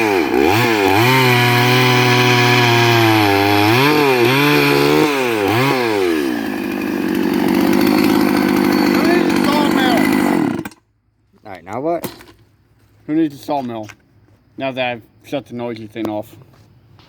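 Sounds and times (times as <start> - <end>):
chainsaw cutting wood: 0.0 - 10.8.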